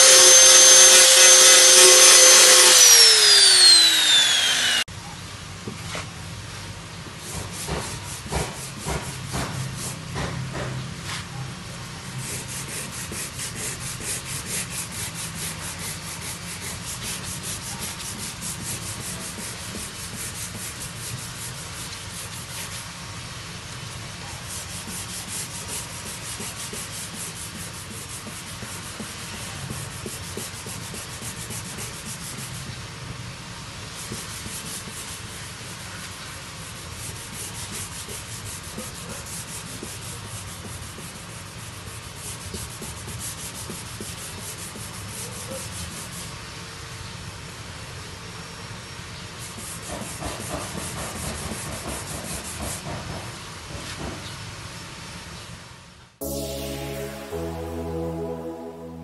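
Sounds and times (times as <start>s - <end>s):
sandpaper rubbing on plastic: 0.0s - 4.8s, 7.2s - 10.2s, 12.1s - 23.0s, 24.4s - 32.8s, 34.0s - 46.4s, 49.4s - 53.2s.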